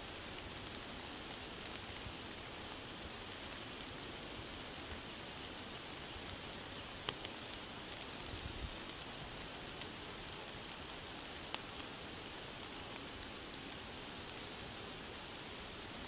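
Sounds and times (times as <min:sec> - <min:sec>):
rain falling in forest: 0:00.0 - 0:16.0
drops pattering on leaves: 0:00.1 - 0:16.0.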